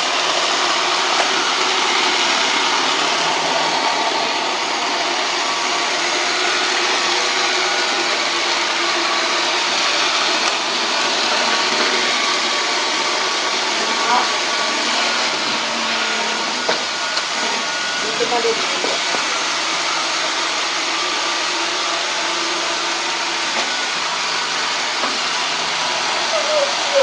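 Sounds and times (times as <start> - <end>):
robot vacuum whirring: 0.0 - 27.0.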